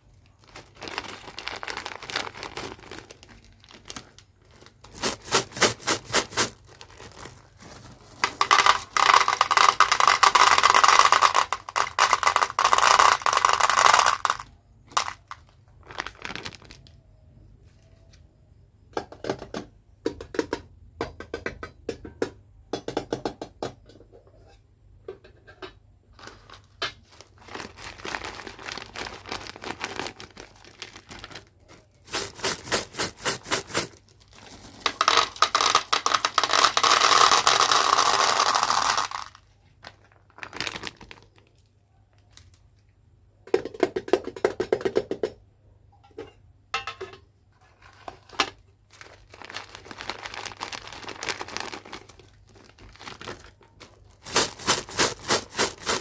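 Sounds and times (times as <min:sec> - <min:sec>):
loud packaging rustling: 0:00.0 - 0:17.0, 0:26.2 - 0:41.6, 0:47.9 - 0:56.0
candy wrapper crinkling: 0:00.0 - 0:17.1, 0:26.2 - 0:41.7, 0:48.9 - 0:56.0.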